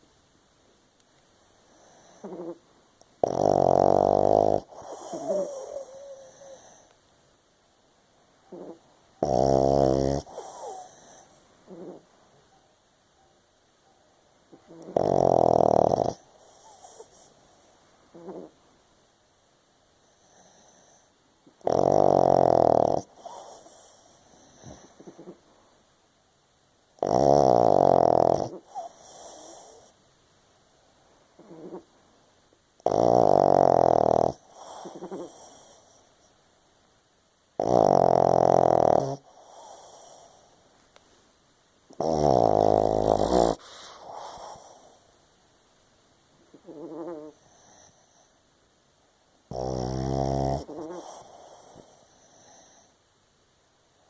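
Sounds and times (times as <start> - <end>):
dog snoring: 1.7 - 2.6, 3.2 - 6.9, 8.5 - 12.1, 14.5 - 18.6, 20.0 - 25.4, 27.0 - 30.0, 31.4 - 31.9, 32.8 - 36.3, 37.6 - 40.6, 41.9 - 45.1, 46.5 - 48.4, 49.5 - 53.0
dog breathing: 4.6 - 6.9, 8.5 - 12.0, 42.0 - 45.1.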